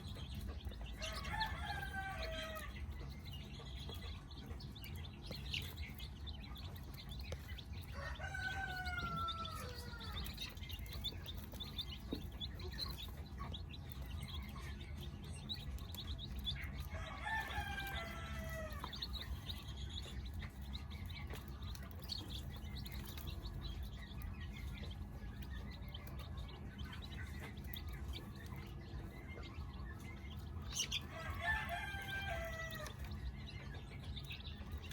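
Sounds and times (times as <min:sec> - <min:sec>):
chicks cheeping: 0:00.0 - 0:34.9
rooster crowing: 0:01.0 - 0:02.8, 0:07.9 - 0:10.4, 0:16.9 - 0:18.9, 0:31.1 - 0:33.0.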